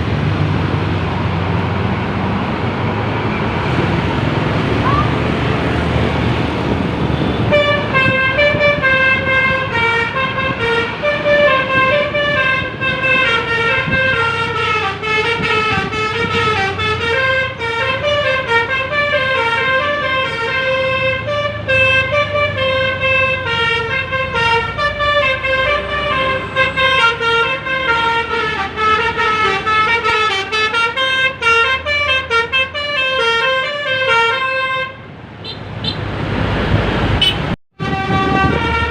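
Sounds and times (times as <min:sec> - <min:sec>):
bus engine rumble: 0:00.0 - 0:38.9
bus musical horn melody: 0:07.2 - 0:36.0, 0:37.2 - 0:38.9.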